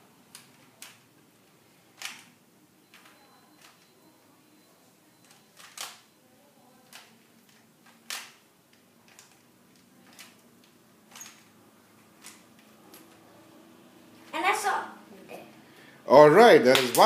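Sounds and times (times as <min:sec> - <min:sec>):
puzzle cube turning clicks: 0:05.2 - 0:06.0, 0:06.8 - 0:11.5.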